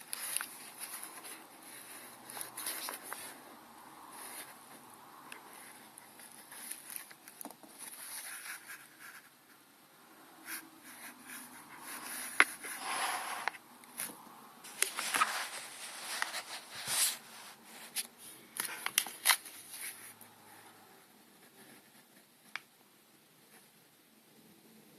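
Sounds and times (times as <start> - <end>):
packaging rustling and crinkling: 14.7 - 20.0.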